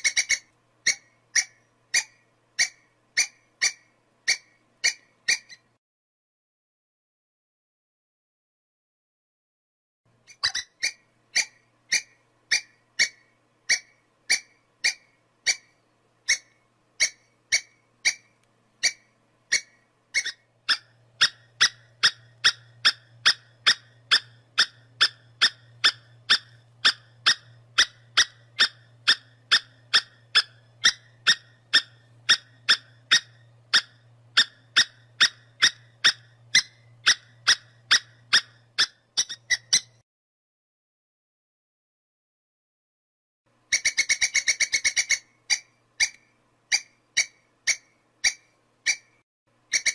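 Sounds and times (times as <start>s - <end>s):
squirrel chirping: 0.0s - 5.8s, 10.2s - 40.0s, 43.7s - 49.9s
faint low hum: 10.1s - 40.0s.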